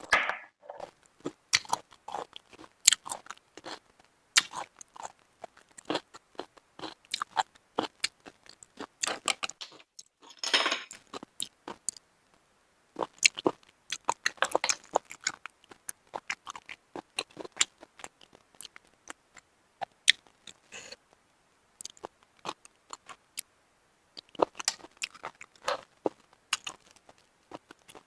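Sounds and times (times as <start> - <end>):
wet chewing with crunches: 4.4 - 9.6, 13.0 - 20.6, 24.2 - 28.0.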